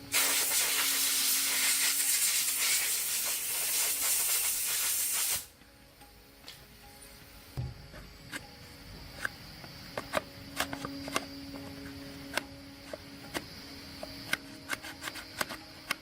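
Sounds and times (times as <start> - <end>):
faint steady hum: 5.5 - 16.0.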